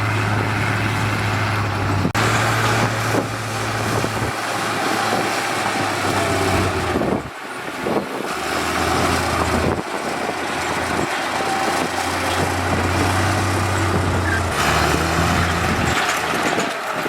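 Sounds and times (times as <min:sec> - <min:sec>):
diesel construction machinery running: 0:00.0 - 0:17.0.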